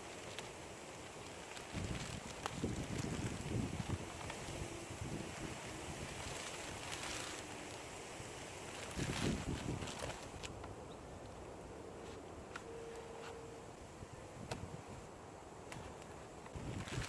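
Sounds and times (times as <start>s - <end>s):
packaging rustling: 0.0s - 7.9s, 8.6s - 10.7s, 15.7s - 17.0s.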